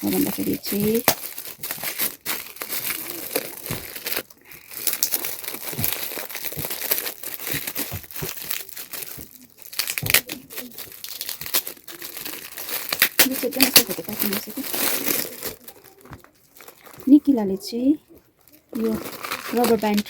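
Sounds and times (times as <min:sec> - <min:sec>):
wrapping paper crinkling: 0:00.0 - 0:20.0
paper tearing: 0:09.7 - 0:16.1, 0:18.7 - 0:20.0.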